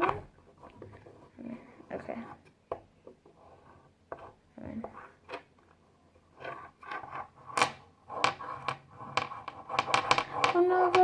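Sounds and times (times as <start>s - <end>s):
magnetic toys clicking on table: 7.6s - 11.0s.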